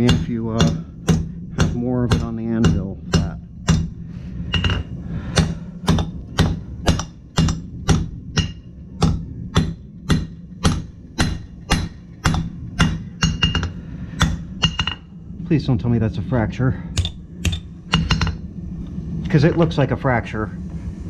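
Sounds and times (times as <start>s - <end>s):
high anvil ring: 0.0s - 8.7s, 11.2s - 15.1s
hammer striking steel on anvil: 0.0s - 15.1s, 17.0s - 18.4s
steady low hum: 0.0s - 21.0s.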